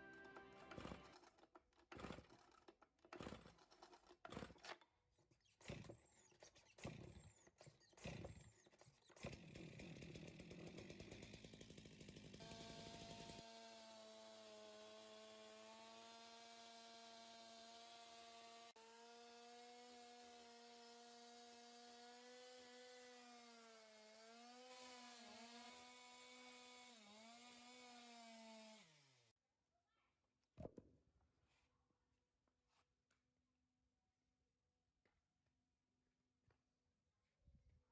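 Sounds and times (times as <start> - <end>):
chainsaw engine at high revs: 0.0 - 1.2, 1.9 - 4.8, 5.6 - 6.0, 6.7 - 29.3.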